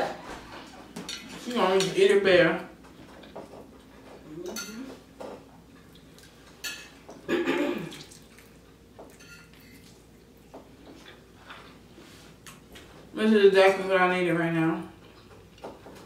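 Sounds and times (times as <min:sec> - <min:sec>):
cutlery clinking on dishes: 0:06.6 - 0:07.0, 0:09.1 - 0:09.9
wet chewing: 0:07.9 - 0:11.8.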